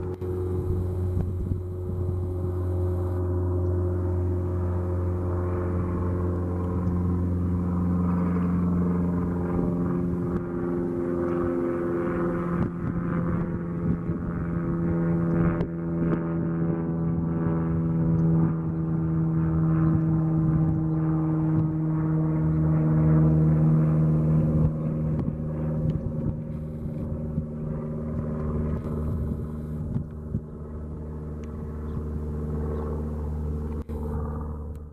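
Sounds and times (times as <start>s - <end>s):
light aircraft engine and propeller: 0.0s - 34.9s.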